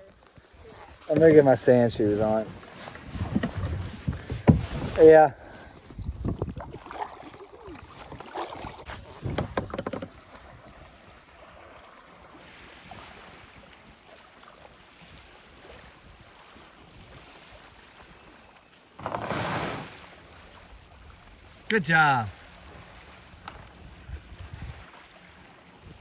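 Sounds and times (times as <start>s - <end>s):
kayak and paddle knocking: 1.1s - 10.7s.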